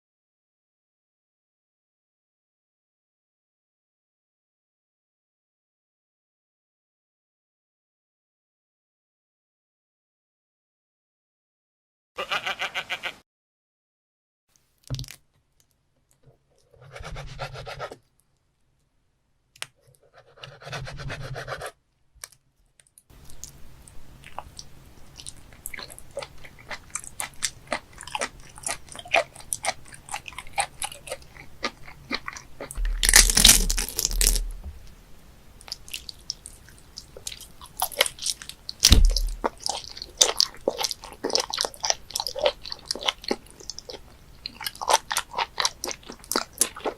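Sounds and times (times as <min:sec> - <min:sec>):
wet chewing and crunching: 0:24.2 - 0:35.0, 0:35.6 - 0:46.9
short sounds: 0:38.9 - 0:39.5.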